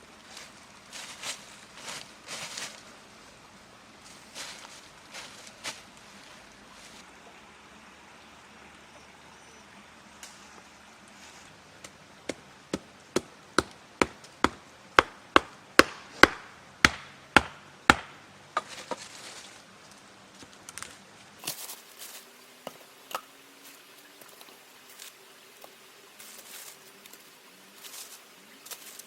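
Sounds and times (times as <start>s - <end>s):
axe chopping wood: 12.3s - 19.0s.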